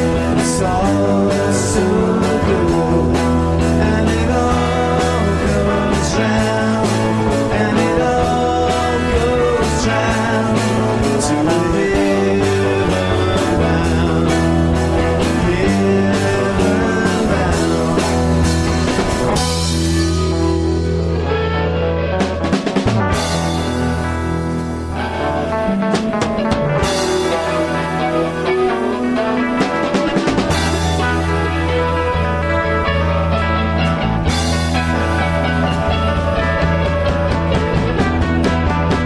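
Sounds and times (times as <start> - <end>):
person singing: 0.0 - 20.2
rock song with guitar and drums: 0.0 - 39.0.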